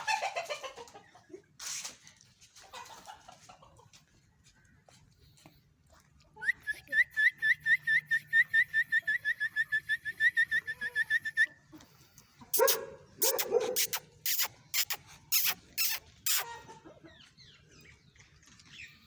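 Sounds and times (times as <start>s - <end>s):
chickens squawking: 0.0s - 1.4s, 10.2s - 17.6s
dog yipping: 12.5s - 16.7s.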